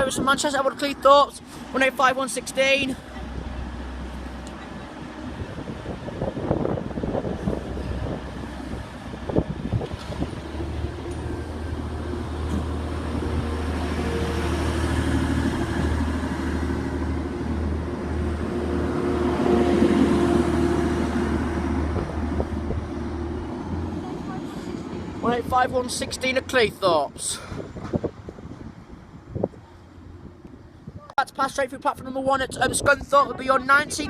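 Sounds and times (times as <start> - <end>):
diesel train engines droning: 0.0 - 34.0.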